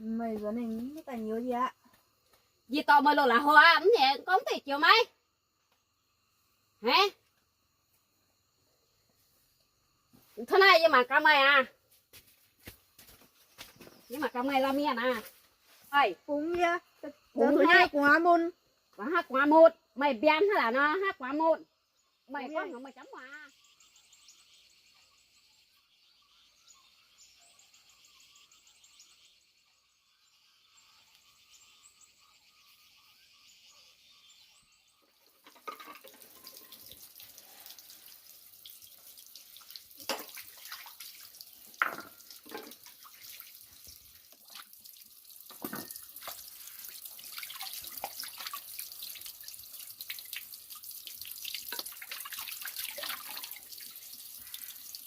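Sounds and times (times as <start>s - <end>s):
faint insects chirring: 0.0s - 55.0s
water running and splashing: 35.2s - 55.0s
sharp knocks at a basin: 41.8s - 42.7s.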